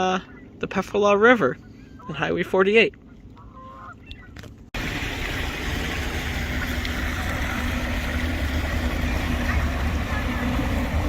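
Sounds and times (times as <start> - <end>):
motorboat engine humming: 0.0 - 11.0
wind: 0.0 - 11.0
rushing water: 4.8 - 11.0.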